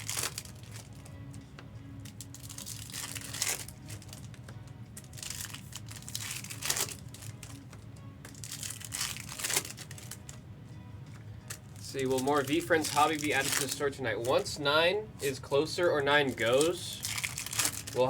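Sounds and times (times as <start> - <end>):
plastic wrapping crinkling and tearing: 0.0 - 1.1, 2.0 - 10.4, 11.5 - 14.4, 16.3 - 18.0
quiet background music: 0.0 - 18.0.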